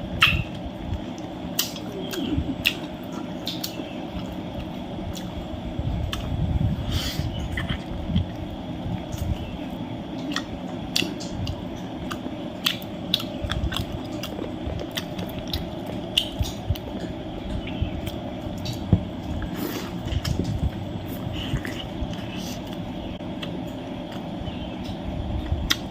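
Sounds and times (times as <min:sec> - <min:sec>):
person chewing food: 0:00.2 - 0:06.4, 0:07.4 - 0:24.3, 0:25.4 - 0:25.9.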